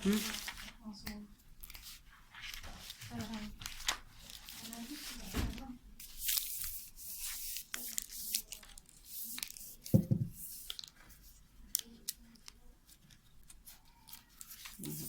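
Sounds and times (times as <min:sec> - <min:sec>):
dull thump: 0:10.0 - 0:10.4.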